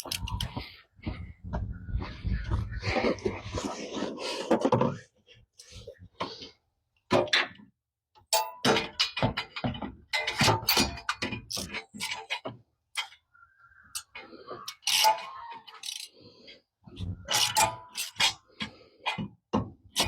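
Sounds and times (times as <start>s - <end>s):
ratchet wrench clicking: 14.7s - 15.1s, 15.8s - 16.1s, 17.3s - 18.2s.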